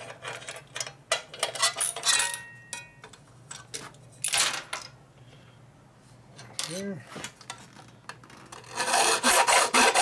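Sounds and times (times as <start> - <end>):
metal tools clinking and clattering: 0.2 - 2.9.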